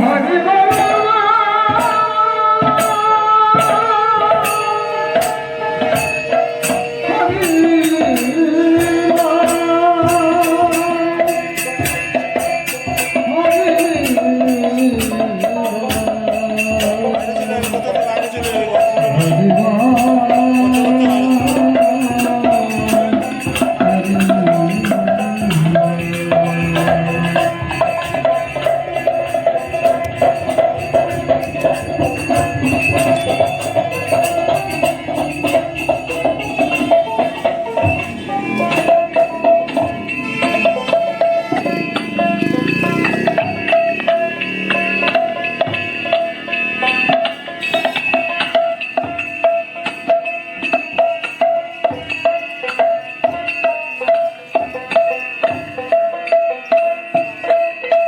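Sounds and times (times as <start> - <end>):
devotional music over loudspeaker: 0.0 - 49.1
drums: 0.0 - 58.0
jingling percussion: 0.0 - 58.0.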